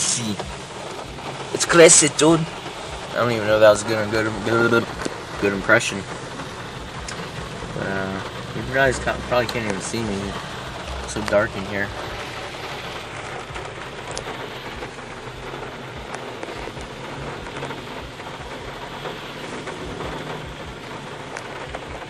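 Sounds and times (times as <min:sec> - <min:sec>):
heavy rain: 0:00.0 - 0:22.0
raindrops ticking on a surface: 0:00.0 - 0:22.0.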